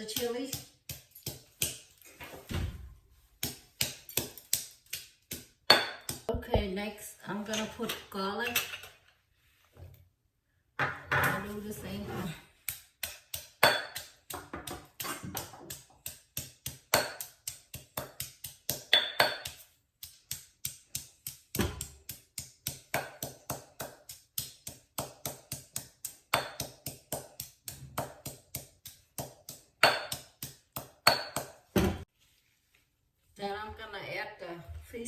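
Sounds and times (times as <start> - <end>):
utensil striking garlic: 12.6 - 31.6.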